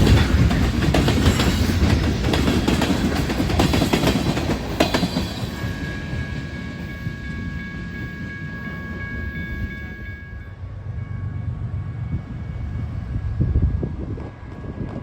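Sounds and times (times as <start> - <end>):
wheels clicking over rail joints: 0.0 - 7.3
railroad cars rumbling past: 0.0 - 15.0
steady high ringing tone: 4.6 - 13.3.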